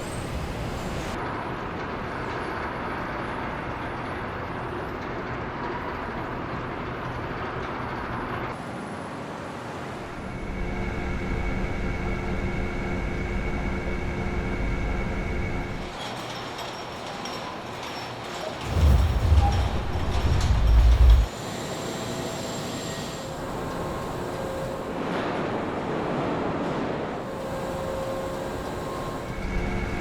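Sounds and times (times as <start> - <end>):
machine hum over deep rumble: 18.6 - 21.3.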